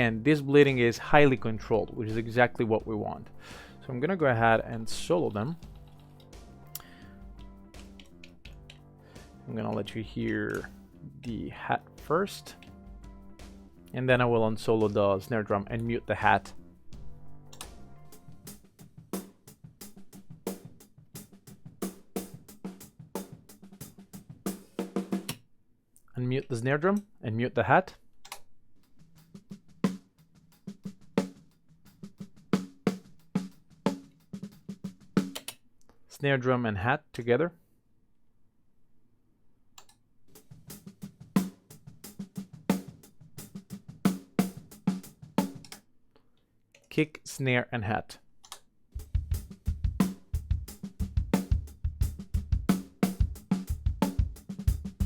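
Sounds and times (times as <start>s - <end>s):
faint snare and kick drum: 0.0s - 3.4s, 4.4s - 14.0s, 14.6s - 25.4s, 28.8s - 35.5s, 40.3s - 45.8s, 48.9s - 55.0s
hi-hat played with sticks: 4.6s - 14.0s, 16.3s - 25.4s, 28.8s - 35.4s, 40.4s - 45.8s, 49.0s - 55.0s.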